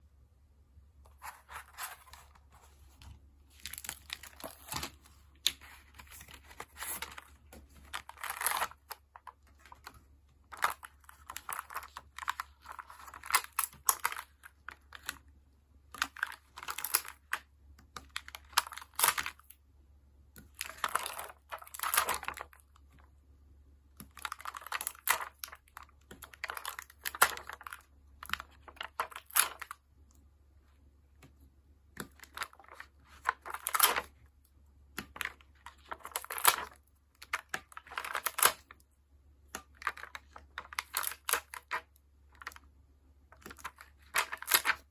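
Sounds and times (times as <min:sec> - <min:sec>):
stickers peeling and crinkling: 0:43.4 - 0:44.9.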